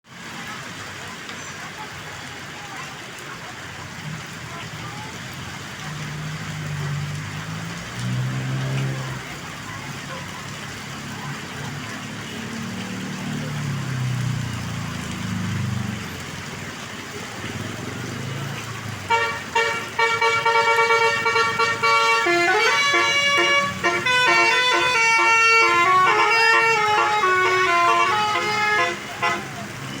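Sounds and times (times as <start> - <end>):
bus engine rumbling: 0.4 - 30.0
musical air horn melody: 19.1 - 29.6.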